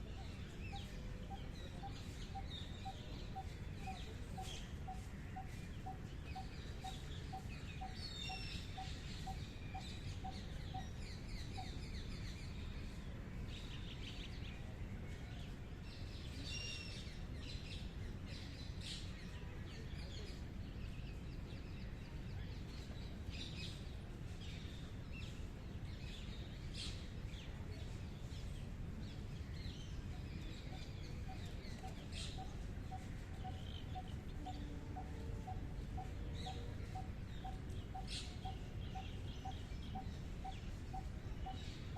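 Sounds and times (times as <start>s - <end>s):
low background noise: 0.0s - 41.9s.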